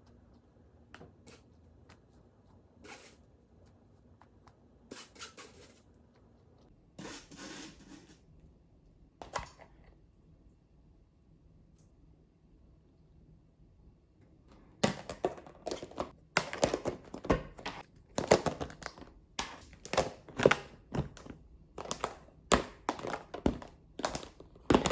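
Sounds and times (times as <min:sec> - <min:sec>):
rustling or scraping: 0:01.1 - 0:08.3.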